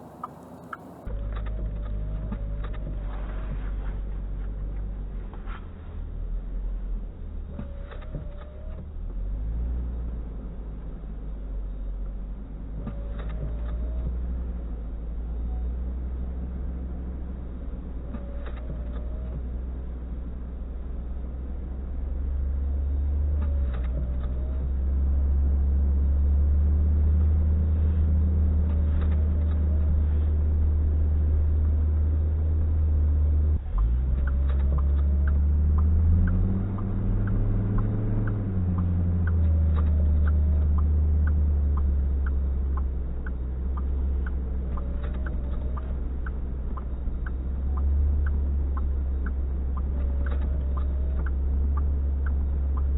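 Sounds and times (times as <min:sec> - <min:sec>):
faint quick ticking: 0:00.0 - 0:01.1
vehicle engine rumbling: 0:00.0 - 0:52.9.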